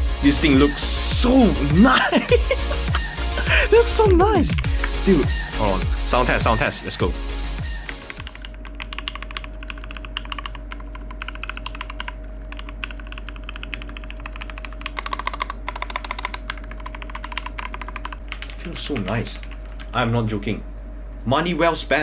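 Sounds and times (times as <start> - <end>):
faint steady hum: 0.0 - 22.0
mechanical keyboard typing: 7.9 - 19.8.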